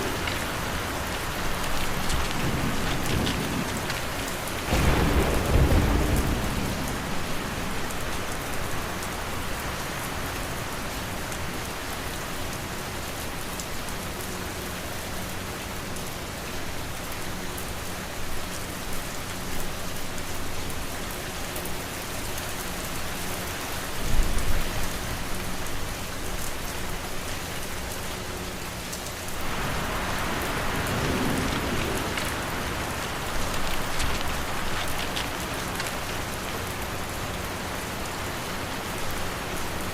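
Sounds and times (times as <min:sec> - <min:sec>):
thunder rumbling: 0:00.0 - 0:08.9, 0:29.3 - 0:37.4
steady rain: 0:00.0 - 0:39.9.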